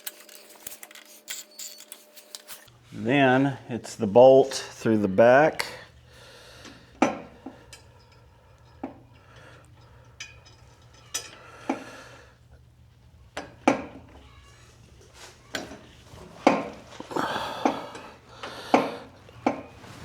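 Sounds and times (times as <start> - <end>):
light metallic clinks and taps: 7.0 - 11.4.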